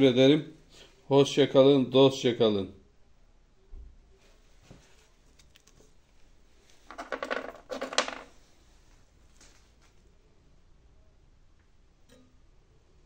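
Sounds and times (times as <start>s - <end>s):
small hard objects clattering: 6.8s - 8.3s.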